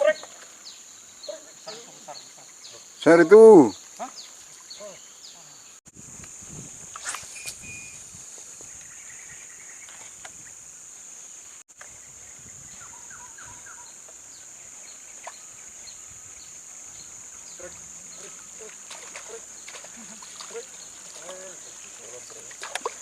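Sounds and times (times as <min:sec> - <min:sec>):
insects droning: 0:00.0 - 0:23.0
short chirps: 0:07.0 - 0:08.0.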